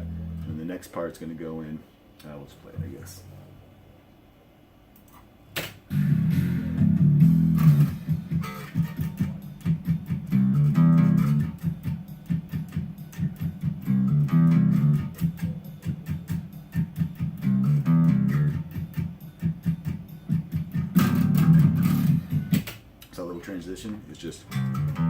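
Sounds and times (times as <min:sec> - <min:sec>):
electric bass guitar riff: 0:00.0 - 0:00.7, 0:05.9 - 0:22.7, 0:24.5 - 0:25.0.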